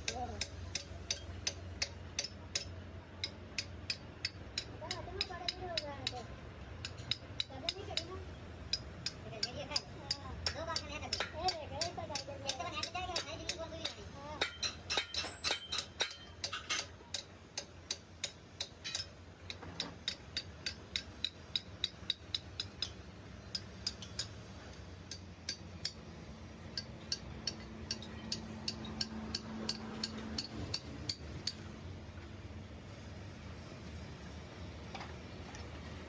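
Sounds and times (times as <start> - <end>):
sharp metallic taps: 0.1 - 6.2, 26.7 - 31.7.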